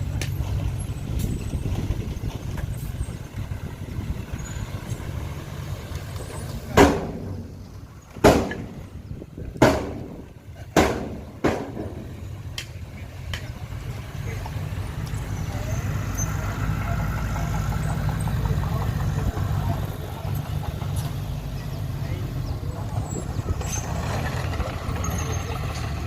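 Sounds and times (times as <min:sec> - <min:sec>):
heavy vehicle engine rumbling: 0:00.0 - 0:26.0
sharp loud ringing knocks: 0:06.8 - 0:07.5, 0:08.2 - 0:08.8, 0:09.6 - 0:12.2.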